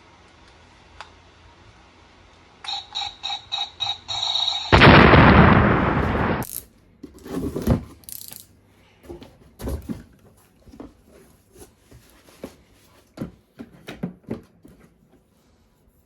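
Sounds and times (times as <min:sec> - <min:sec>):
plastic toys clicking and knocking: 0:08.0 - 0:08.5.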